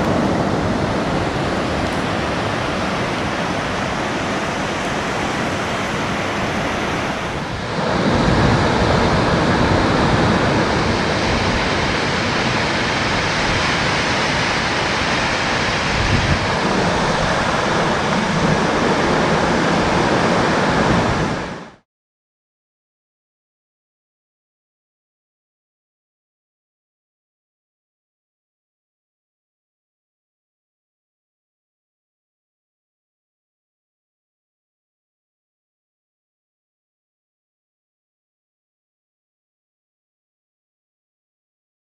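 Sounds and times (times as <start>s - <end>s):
waterfall rushing: 0.0s - 21.8s.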